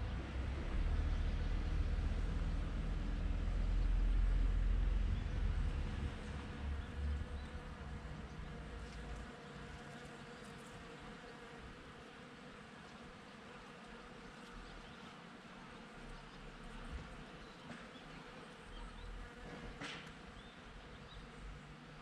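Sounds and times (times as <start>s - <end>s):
bees buzzing: 5.9s - 21.4s.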